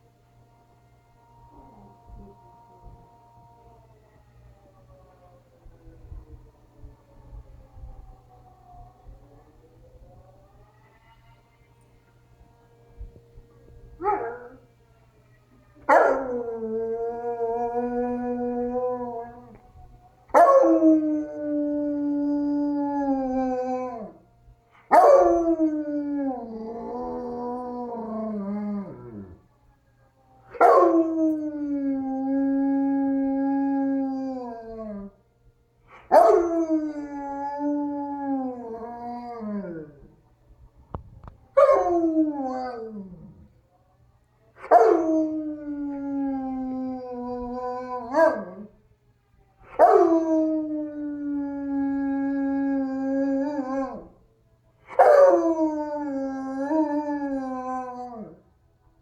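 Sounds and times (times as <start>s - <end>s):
tornado siren recording: 0.0s - 58.5s
dog howling: 14.0s - 14.6s, 15.9s - 19.7s, 24.9s - 29.4s, 30.5s - 35.2s, 35.9s - 40.2s, 41.6s - 43.5s, 44.6s - 48.7s, 49.6s - 54.2s, 54.9s - 58.4s.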